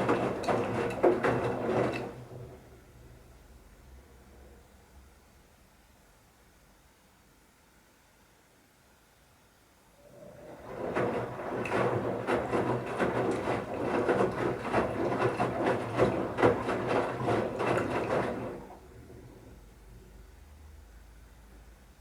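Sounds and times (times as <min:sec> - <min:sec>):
water sloshing: 0:00.0 - 0:02.2, 0:10.2 - 0:19.2
washing machine drum tumbling towels: 0:00.0 - 0:02.9, 0:10.1 - 0:19.7.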